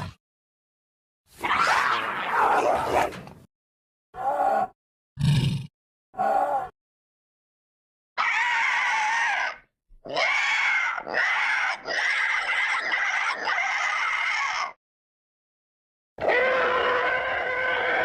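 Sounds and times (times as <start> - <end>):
creature screeching: 1.4 - 3.1, 4.2 - 4.7, 8.2 - 14.8, 16.2 - 18.0.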